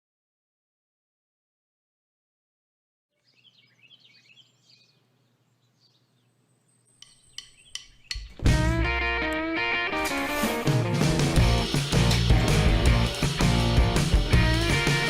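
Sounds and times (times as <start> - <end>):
faint chirping: 3.1 - 8.4
sharp clicks: 7.0 - 8.4
loud guitar music: 8.4 - 15.0.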